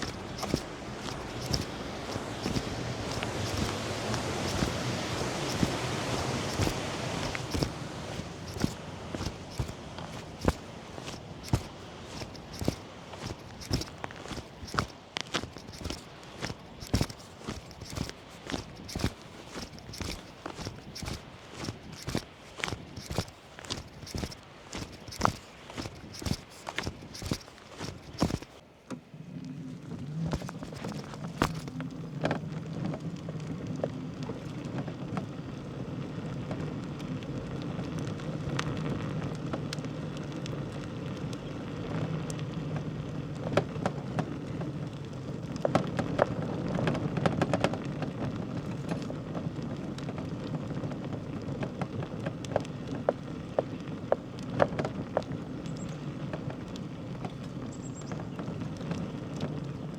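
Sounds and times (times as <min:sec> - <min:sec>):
bicycle clicks and rattles: 0:00.0 - 0:28.6, 0:30.1 - 0:59.9
bicycle tyres rumbling on road: 0:00.0 - 0:59.9.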